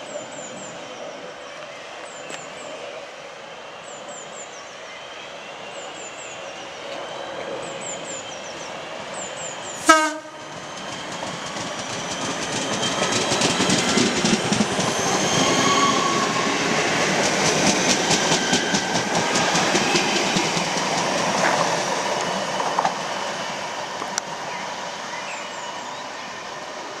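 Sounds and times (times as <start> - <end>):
train horn blast: 9.8 - 10.5
train wheels clattering: 10.5 - 16.4, 17.0 - 23.0.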